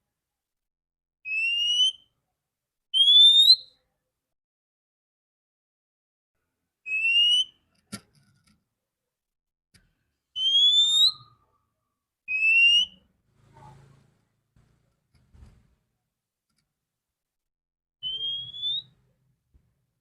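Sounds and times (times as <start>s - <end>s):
bird whistling rising notes: 10.4s - 11.3s, 18.0s - 19.0s.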